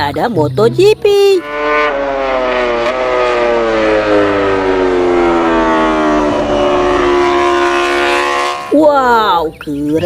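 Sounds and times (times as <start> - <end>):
racing motorcycle engine drone: 0.0 - 10.0.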